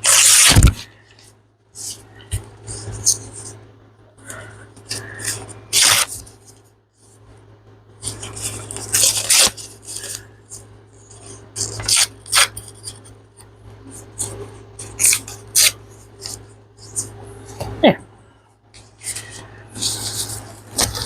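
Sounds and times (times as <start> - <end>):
paper tearing: 0.0 - 0.9, 4.9 - 6.5, 8.0 - 13.1, 14.2 - 17.1, 19.0 - 21.0
handling paper sheets: 0.0 - 3.6, 4.3 - 7.2, 8.0 - 13.1, 13.9 - 17.7, 18.8 - 21.0.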